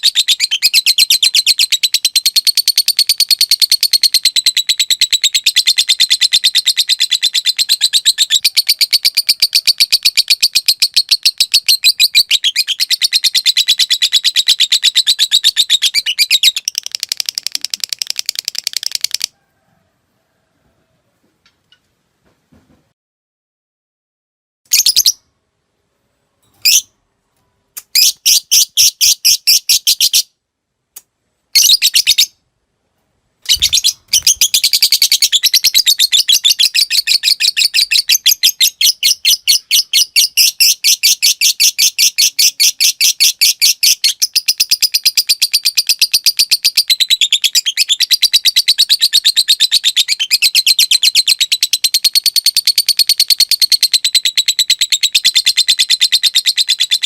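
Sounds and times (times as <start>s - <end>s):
lovebird chattering trills: 33.5s - 43.6s.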